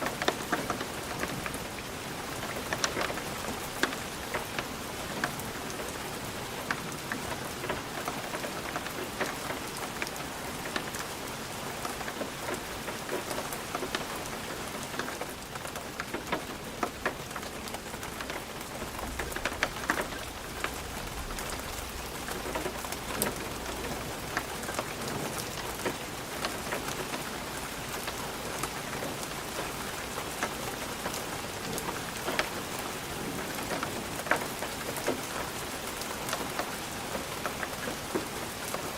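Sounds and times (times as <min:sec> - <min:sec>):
raindrops tapping on glass: 0:11.7 - 0:38.9
rain hissing: 0:12.4 - 0:38.5.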